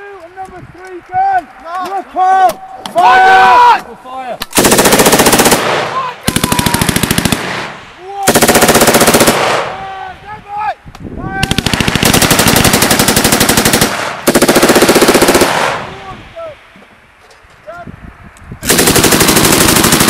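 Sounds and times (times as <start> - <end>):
machine gun bursts: 4.6 - 7.6, 8.3 - 9.6, 11.5 - 15.8, 18.6 - 20.0.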